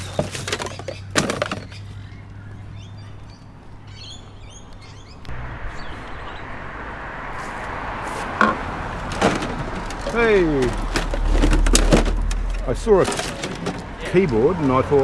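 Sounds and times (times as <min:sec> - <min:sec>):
birds chirping: 0:00.0 - 0:15.0
low engine hum: 0:00.0 - 0:15.0
even rushing noise: 0:05.2 - 0:12.9
sharp knocks: 0:08.3 - 0:14.0.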